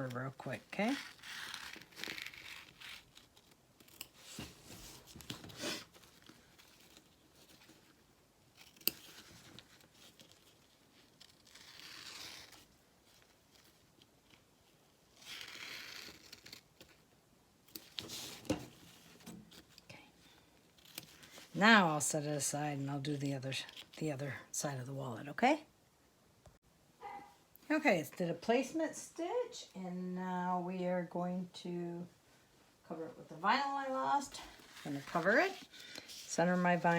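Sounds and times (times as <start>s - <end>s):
stabilizer ripping: 0.6s - 14.5s, 15.1s - 17.0s.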